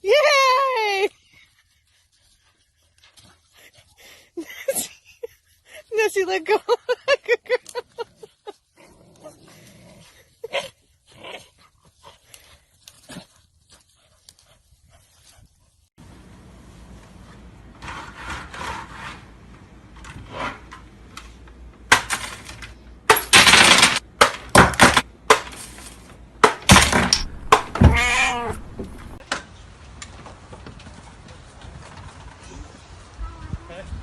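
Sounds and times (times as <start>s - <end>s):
knocks and clattering crashes: 21.8s - 29.2s.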